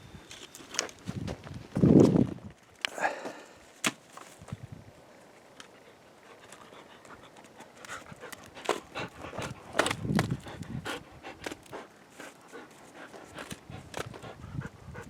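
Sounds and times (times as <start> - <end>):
dog panting: 5.8 - 15.0.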